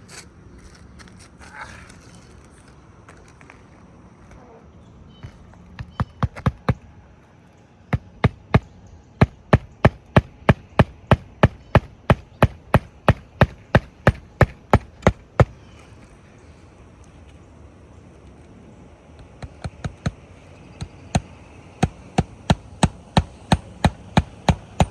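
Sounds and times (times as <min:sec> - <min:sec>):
hammer driving nails: 0:05.8 - 0:06.8, 0:08.0 - 0:15.6, 0:19.2 - 0:24.9.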